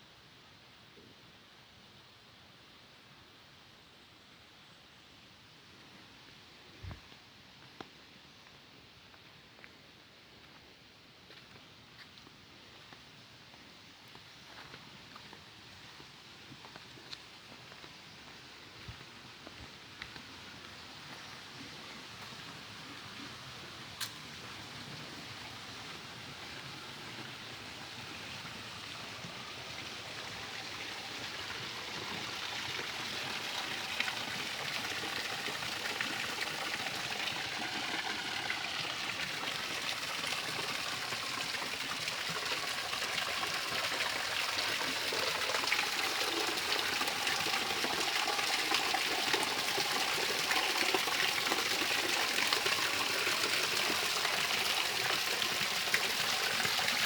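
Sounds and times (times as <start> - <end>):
stream water rushing: 22.6 - 57.0.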